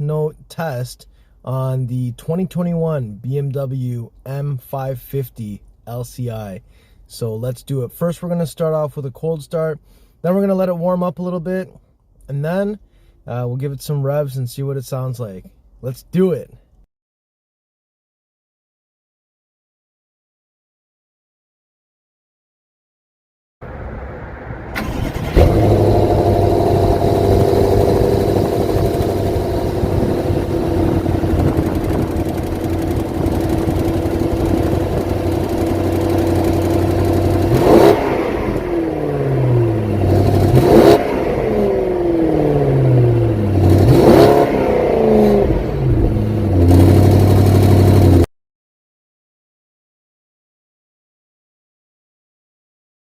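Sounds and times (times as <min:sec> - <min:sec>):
car engine starting and idling: 0:23.6 - 0:48.3
engine revving: 0:23.8 - 0:48.3.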